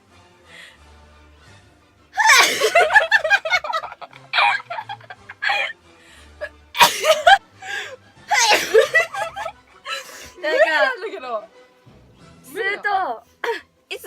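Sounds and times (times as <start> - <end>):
woman sneezing: 2.2 - 2.8, 8.3 - 8.9.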